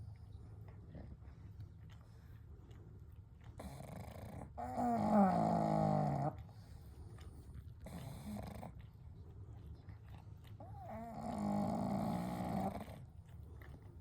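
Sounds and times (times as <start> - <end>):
dog breathing softly: 0.0 - 5.2, 6.0 - 14.0
dog snoring: 3.6 - 6.6, 7.8 - 8.8, 10.6 - 13.1.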